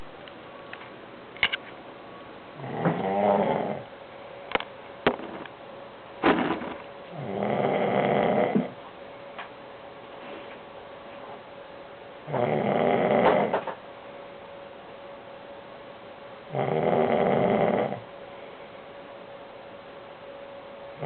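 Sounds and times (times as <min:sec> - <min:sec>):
person snoring loudly: 0:02.6 - 0:03.9, 0:07.1 - 0:08.8, 0:12.3 - 0:13.6, 0:16.5 - 0:18.0.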